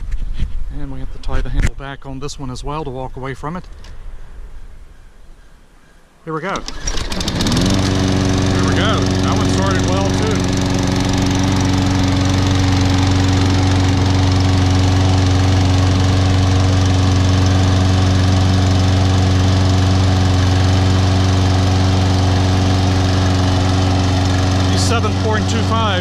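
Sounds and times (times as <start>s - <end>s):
lawn mower engine running: 6.4s - 26.0s.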